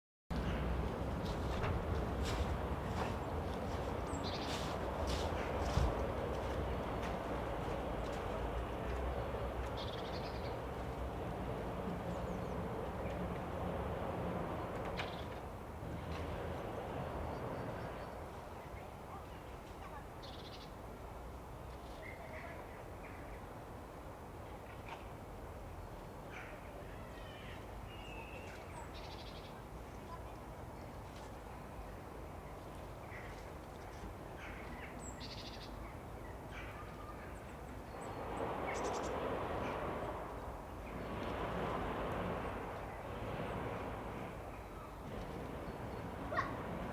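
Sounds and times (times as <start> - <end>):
low rumble of distant noise: 0.3 - 20.4, 26.8 - 46.9
outdoor background noise: 0.3 - 46.9
loud steady rushing noise: 38.0 - 46.9.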